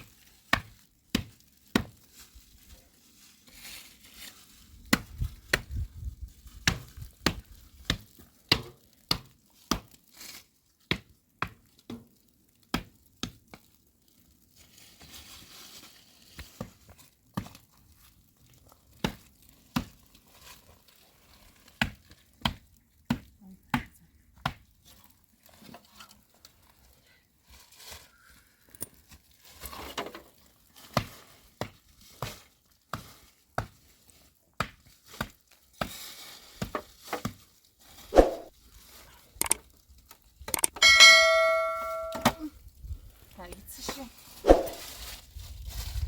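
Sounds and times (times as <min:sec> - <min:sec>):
ringing bell-like tone: 0:40.8 - 0:42.4.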